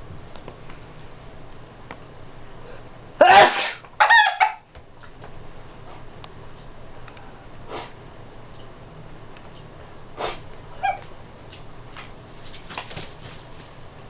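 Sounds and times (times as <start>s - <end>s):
person sneezing loudly: 3.2s - 3.8s
chicken squawking: 3.3s - 4.6s.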